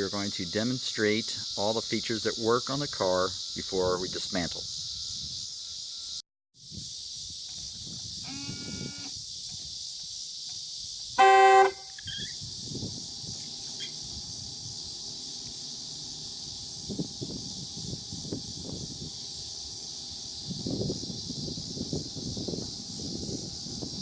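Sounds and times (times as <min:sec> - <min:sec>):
steady high hiss: 0:00.0 - 0:24.0
car horn blast: 0:11.2 - 0:12.0
faint short tone: 0:11.2 - 0:12.4.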